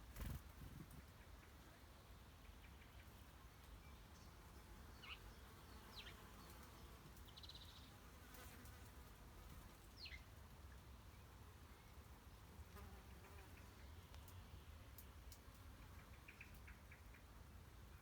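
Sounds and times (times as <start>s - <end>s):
small bird chirps: 5.0s - 8.0s, 15.9s - 17.3s.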